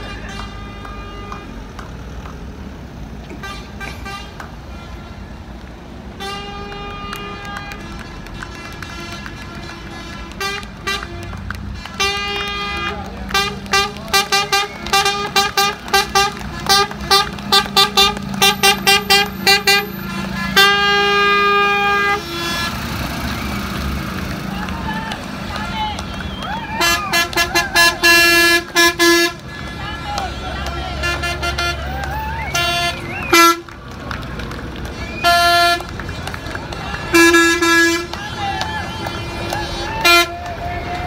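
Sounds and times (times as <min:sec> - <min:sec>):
long horn blast: 0:00.0 - 0:01.7, 0:06.1 - 0:23.4, 0:26.8 - 0:29.4, 0:30.1 - 0:33.7, 0:35.1 - 0:38.2, 0:39.1 - 0:40.7
fire truck engines rumbling: 0:00.0 - 0:41.0.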